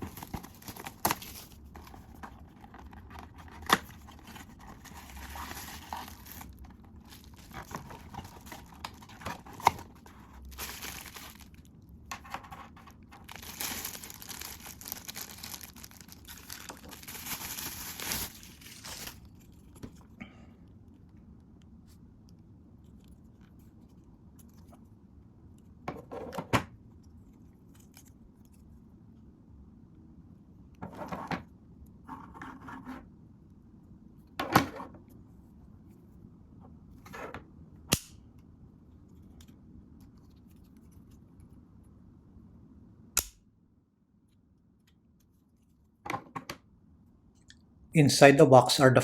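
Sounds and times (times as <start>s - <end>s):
packaging rustling: 0.0s - 11.7s, 12.7s - 19.8s.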